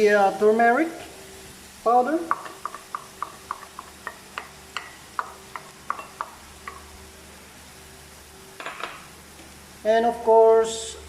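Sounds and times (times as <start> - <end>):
faint frying sizzle: 0.0 - 11.0
utensil tapping a pan: 2.2 - 6.9.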